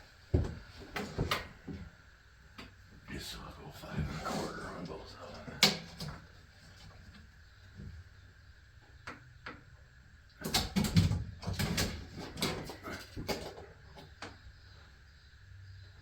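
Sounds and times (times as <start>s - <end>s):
knocks and rustles handling wood: 0.3s - 1.9s, 10.4s - 14.4s.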